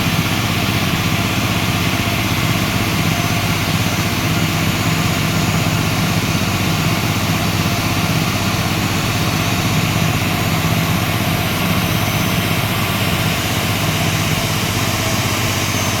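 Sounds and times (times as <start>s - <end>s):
engine idling: 0.0s - 16.0s.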